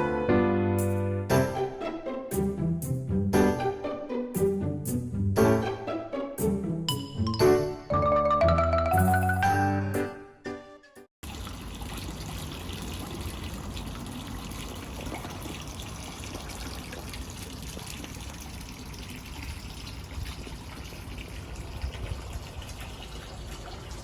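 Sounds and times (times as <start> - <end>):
water pouring into a bath: 11.2 - 24.0.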